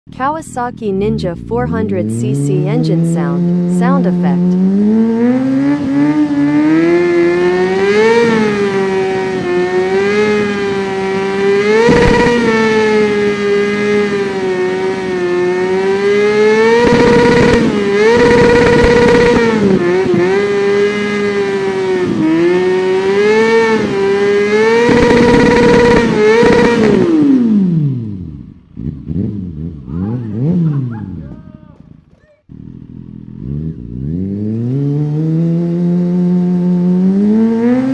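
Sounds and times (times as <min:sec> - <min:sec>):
motorcycle engine revving: 0:00.6 - 0:37.9.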